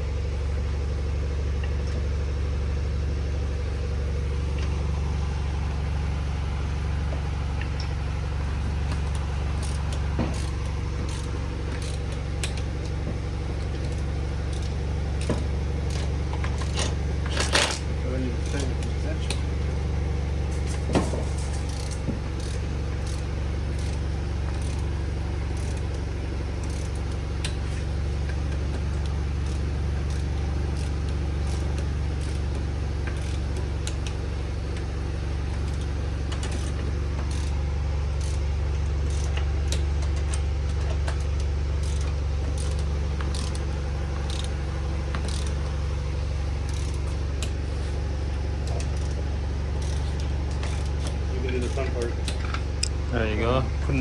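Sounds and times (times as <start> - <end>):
steady low hum: 0.0 - 54.0
metallic clicks of tools: 49.8 - 53.0.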